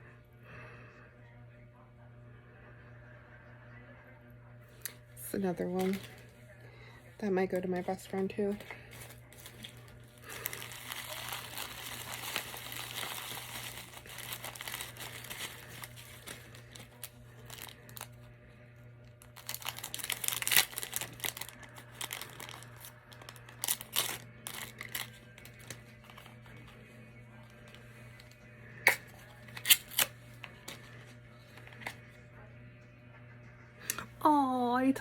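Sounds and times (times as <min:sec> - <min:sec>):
packet crackles: 0:05.4 - 0:06.3, 0:07.5 - 0:18.3, 0:19.0 - 0:26.8
plastic packet rustling: 0:05.4 - 0:06.3, 0:07.8 - 0:18.2, 0:19.2 - 0:26.8.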